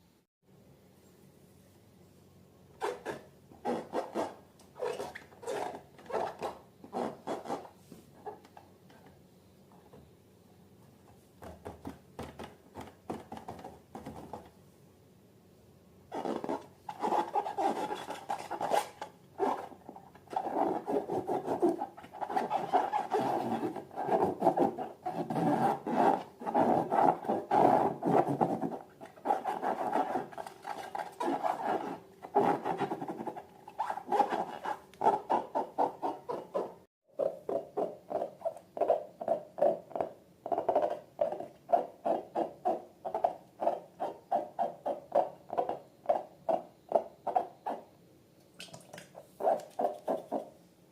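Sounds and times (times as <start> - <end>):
rubber balloons squeaking: 2.8 - 8.5, 16.1 - 47.8.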